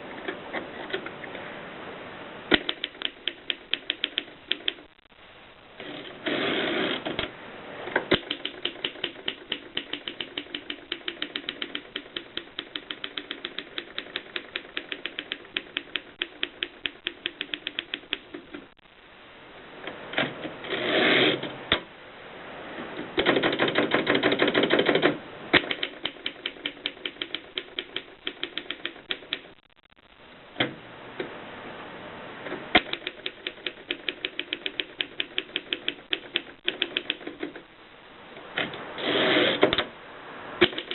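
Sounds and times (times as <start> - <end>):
typewriter rasping: 8.1 - 18.7, 23.2 - 29.5
typewriter key strikes: 23.2 - 29.4.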